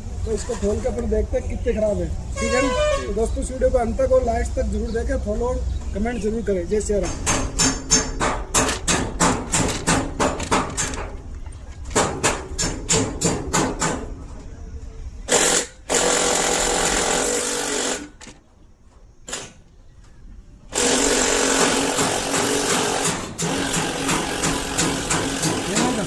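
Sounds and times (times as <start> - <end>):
regular knocks: 6.9 - 14.2
power tool running: 15.3 - 18.2, 20.7 - 26.0.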